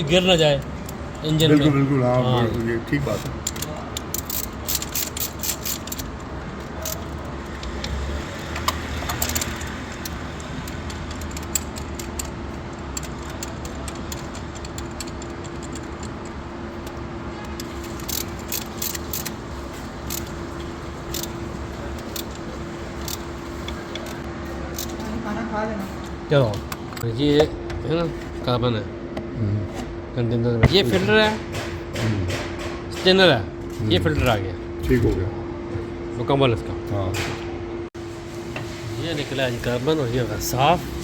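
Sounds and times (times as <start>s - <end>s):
steady low hum: 0.0s - 41.0s
metal tools clinking: 2.4s - 25.1s.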